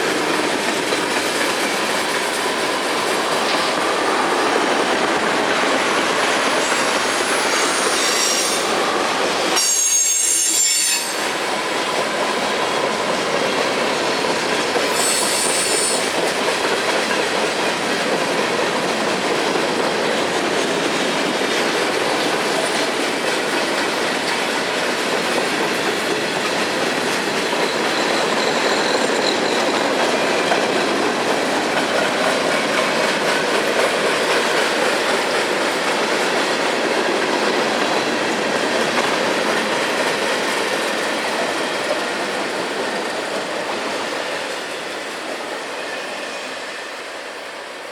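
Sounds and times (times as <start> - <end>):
train wheels rumbling on rail: 0.0 - 47.9
wheel squeals: 14.9 - 16.1, 27.6 - 29.8.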